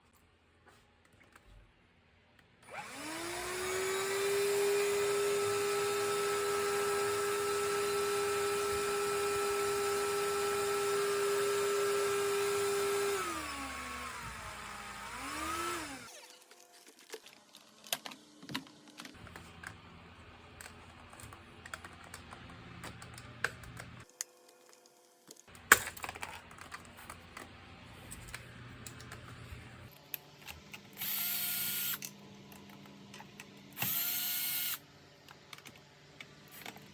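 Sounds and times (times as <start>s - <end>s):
vacuum cleaner motor whining: 2.6s - 24.8s, 27.1s - 32.1s, 33.8s - 34.8s.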